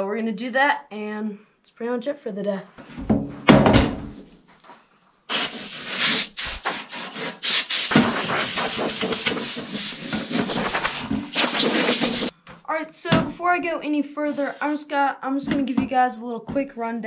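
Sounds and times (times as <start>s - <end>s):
air blow gun hissing: 5.3s - 12.3s, 14.3s - 14.8s.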